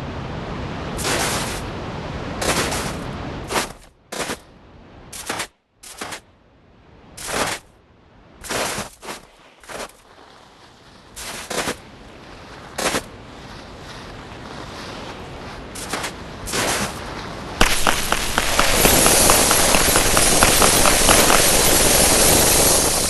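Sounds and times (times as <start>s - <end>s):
snowboard scraping over snow: 8.4s - 23.0s.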